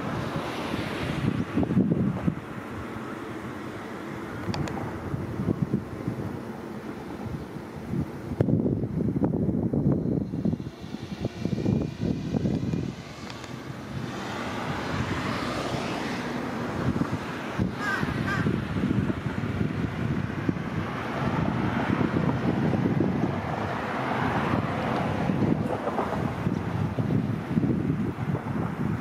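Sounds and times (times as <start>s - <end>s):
wind buffeting microphone: 0.0s - 29.0s
crow cawing: 17.8s - 18.6s.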